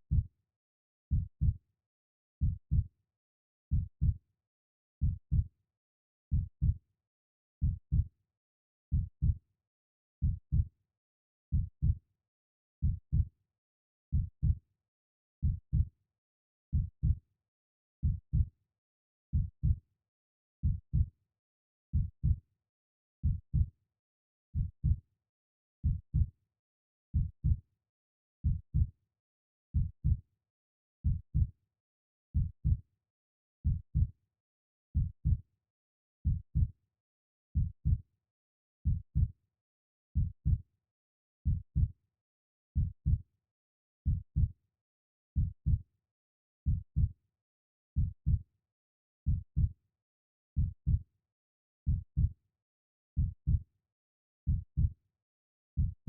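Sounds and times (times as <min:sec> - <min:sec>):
heartbeat thumps: 0:02.4 - 0:02.8, 0:15.4 - 0:15.8, 0:21.9 - 0:22.4, 0:32.4 - 0:32.8, 0:35.0 - 0:35.4, 0:37.6 - 0:38.0, 0:38.8 - 0:39.3, 0:41.4 - 0:41.9, 0:42.8 - 0:43.2, 0:45.4 - 0:45.8, 0:48.0 - 0:48.4, 0:49.3 - 0:49.7, 0:51.9 - 0:52.3, 0:54.5 - 0:54.9.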